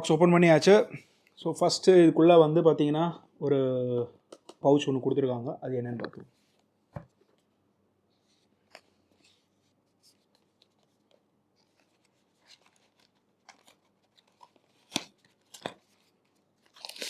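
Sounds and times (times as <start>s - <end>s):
packaging rustling and scraping: 8.3s - 17.0s.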